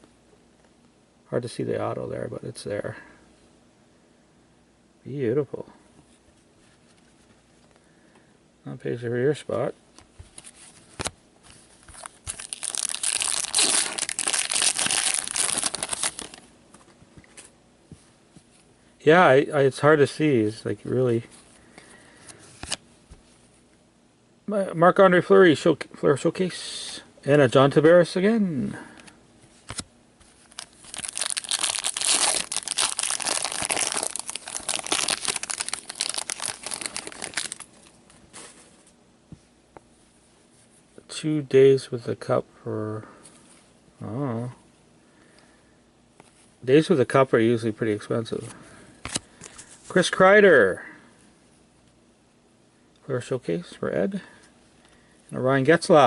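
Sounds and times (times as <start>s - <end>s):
foil wrapper crinkling: 11.9s - 16.4s, 30.4s - 38.5s.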